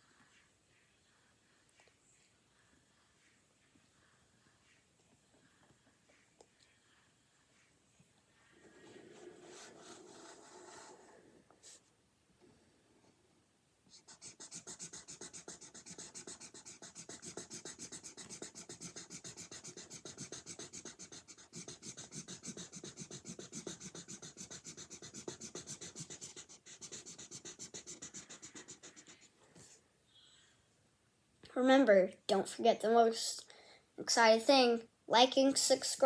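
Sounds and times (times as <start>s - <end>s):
coloring strokes scratching on paper: 0.0s - 11.9s, 13.9s - 29.8s.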